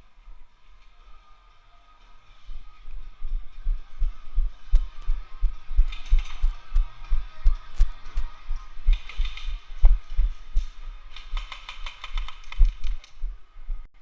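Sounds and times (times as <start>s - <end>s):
sharp clicks: 8.9s - 9.6s, 11.1s - 13.2s.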